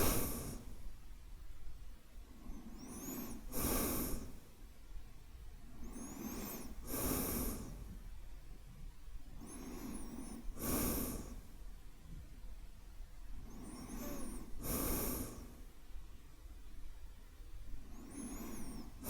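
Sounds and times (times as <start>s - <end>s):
man breathing slowly: 0.0s - 0.9s, 2.3s - 4.6s, 5.7s - 8.0s, 9.4s - 11.6s, 13.4s - 15.7s, 17.8s - 19.0s.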